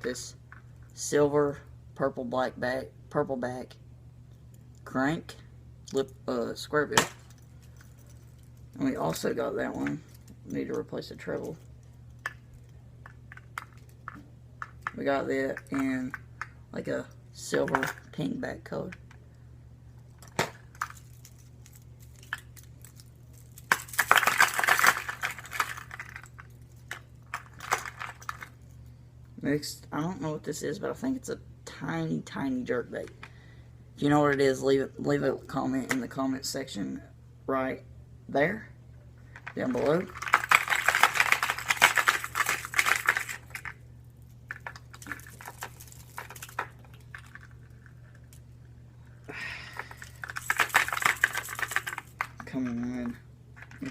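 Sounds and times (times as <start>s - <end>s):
plastic lures clattering and clicking: 7.1s - 16.5s, 17.6s - 18.1s, 20.1s - 28.8s, 39.3s - 43.8s, 44.5s - 48.4s, 49.7s - 53.9s
tackle box rattling and rustling: 39.4s - 43.7s, 49.9s - 52.4s.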